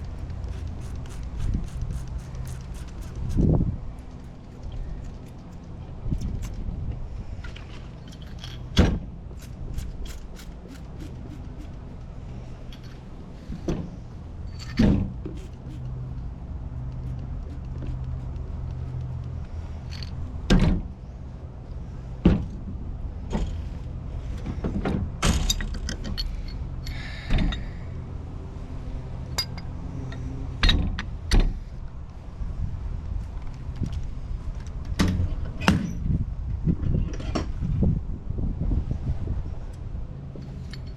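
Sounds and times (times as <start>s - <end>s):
steady low hum: 0.0s - 40.9s
metal clanks and knocks: 7.5s - 15.9s, 24.4s - 27.8s, 29.3s - 31.6s.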